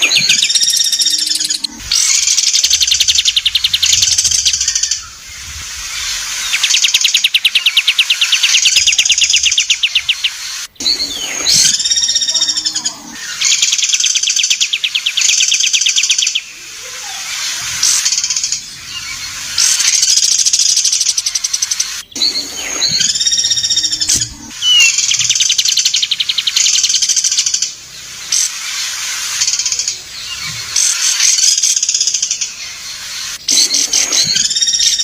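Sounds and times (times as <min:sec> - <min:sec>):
songbird trilling: 0:00.0 - 0:05.3, 0:06.0 - 0:27.6
buzzy bird call: 0:00.0 - 0:35.0.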